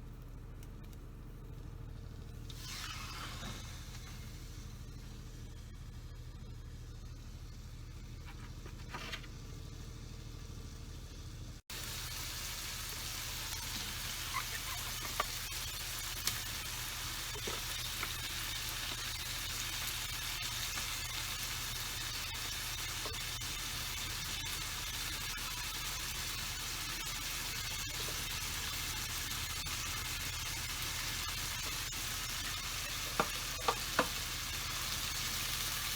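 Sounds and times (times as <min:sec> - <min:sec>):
low hum: 0:00.0 - 0:20.7
food sizzling in a frying pan: 0:11.7 - 0:35.9.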